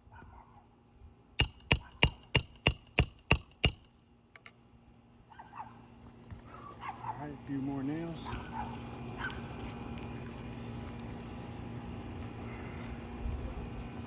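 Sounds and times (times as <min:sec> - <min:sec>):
hammer striking metal: 0:01.4 - 0:04.5.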